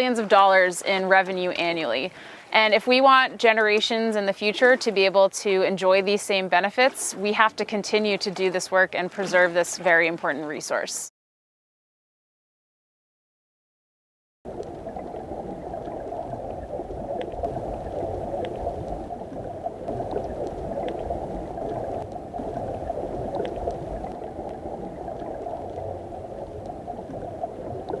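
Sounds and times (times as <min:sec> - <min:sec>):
underwater rush of water: 0:14.5 - 0:28.0.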